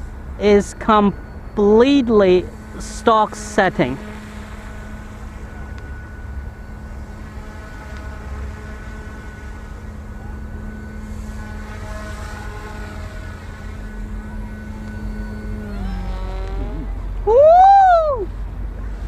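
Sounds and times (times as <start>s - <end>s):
rc helicopter rotors whining: 0.0s - 19.0s.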